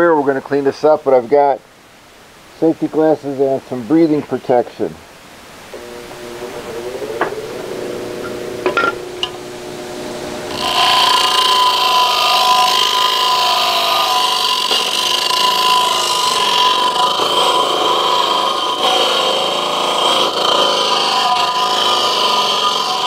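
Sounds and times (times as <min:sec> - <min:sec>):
power wire brush scouring metal: 0:05.7 - 0:23.0.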